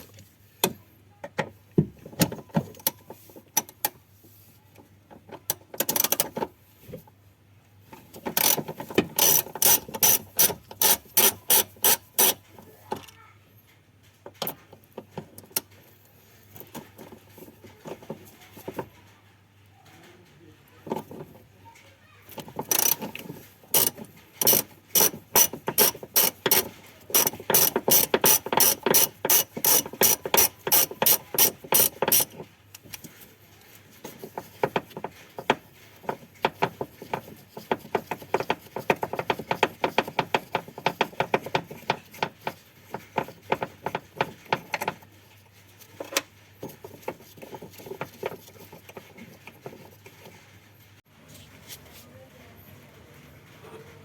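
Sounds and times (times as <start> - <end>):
ratchet wrench clicking: 9.2 - 12.4, 22.4 - 33.0.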